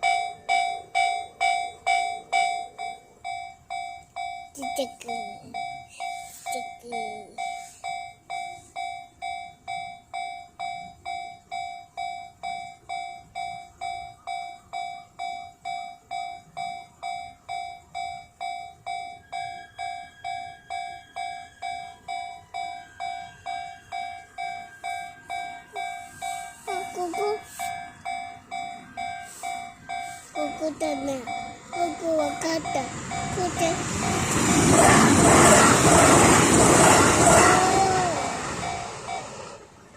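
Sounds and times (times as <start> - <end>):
level-crossing warning bell clanging: 0.0 - 39.9
higher steady tone: 21.2 - 39.8.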